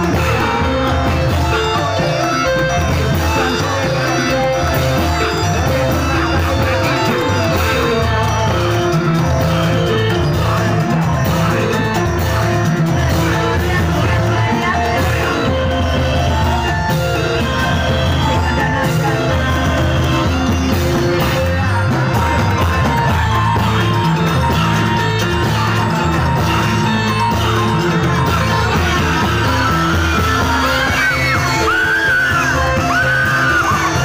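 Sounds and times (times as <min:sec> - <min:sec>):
percussion ensemble playing: 0:00.0 - 0:34.0
voices shouting: 0:13.0 - 0:34.0.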